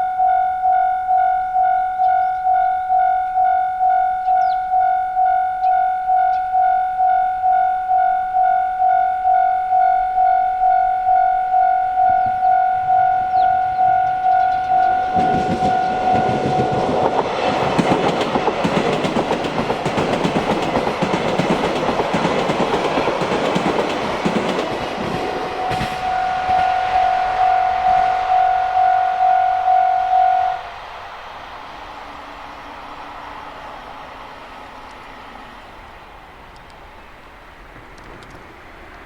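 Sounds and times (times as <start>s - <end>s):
level crossing alarm bell: 0.0s - 18.2s, 25.5s - 30.7s
train wheels clattering: 13.2s - 27.1s.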